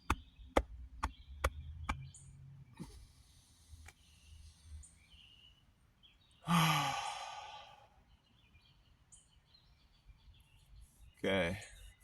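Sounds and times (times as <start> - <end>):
person sighing: 6.4 - 7.9.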